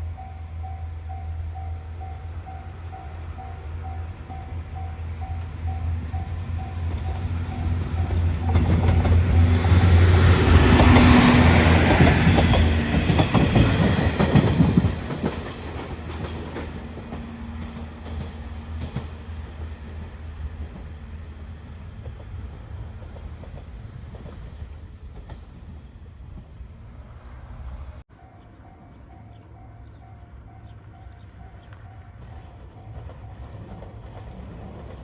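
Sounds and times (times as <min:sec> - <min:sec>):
train rushing and rumbling past: 0:00.0 - 0:35.0
crossing alarm dinging: 0:00.1 - 0:15.3.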